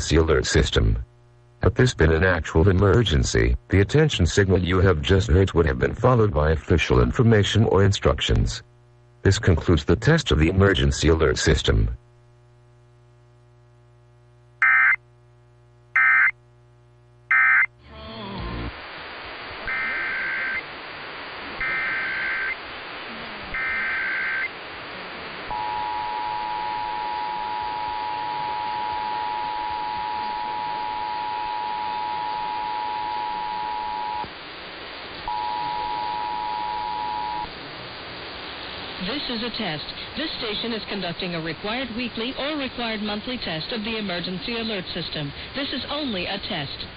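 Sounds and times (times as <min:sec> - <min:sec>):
radio hiss: 0:00.0 - 0:15.0, 0:17.3 - 0:46.9
screeching digital data bursts: 0:19.7 - 0:20.6, 0:21.6 - 0:22.6, 0:23.5 - 0:24.6.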